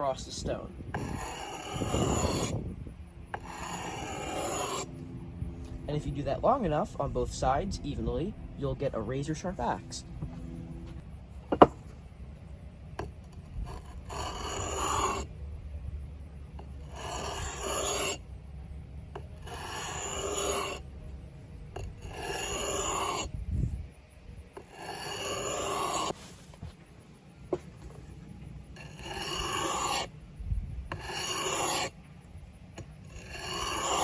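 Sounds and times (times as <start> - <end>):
axe rasping on whetstone: 1.0 - 2.6, 3.3 - 4.9, 13.0 - 15.3, 16.6 - 18.2, 19.2 - 20.8, 21.8 - 23.3, 24.6 - 26.6, 28.7 - 30.1, 30.9 - 32.0, 32.8 - 34.0.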